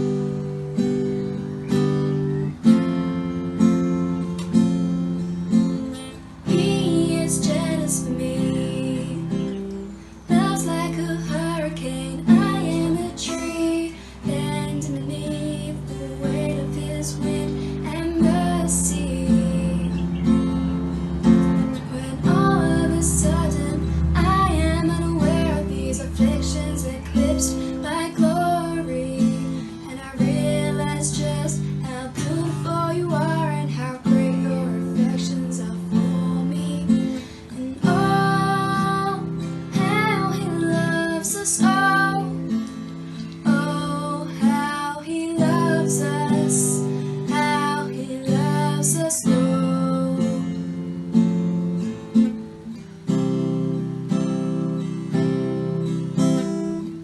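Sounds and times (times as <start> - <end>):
strummed acoustic guitar: 0.0 - 57.0
woman singing: 5.8 - 51.2.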